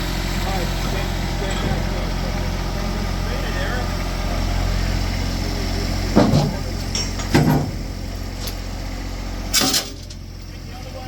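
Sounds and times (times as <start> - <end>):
tractor engine running: 0.0 - 11.0
loud thuds: 6.1 - 8.4.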